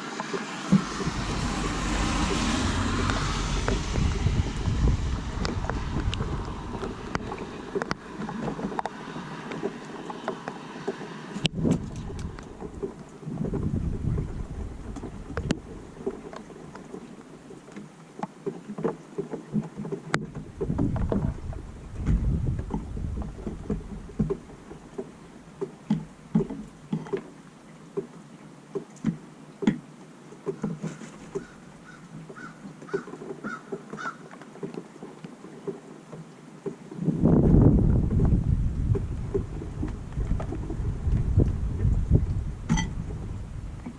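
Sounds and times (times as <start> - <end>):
wind buffeting microphone: 0.4 - 10.8, 11.4 - 16.3, 20.2 - 24.6, 37.0 - 43.9.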